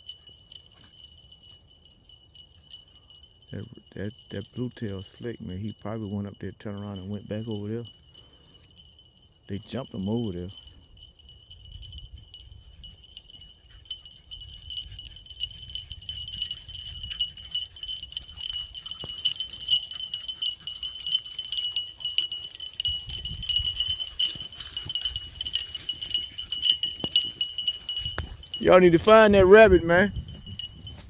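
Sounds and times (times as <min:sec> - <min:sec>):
wind buffeting microphone: 0:11.4 - 0:18.9, 0:22.8 - 0:31.0.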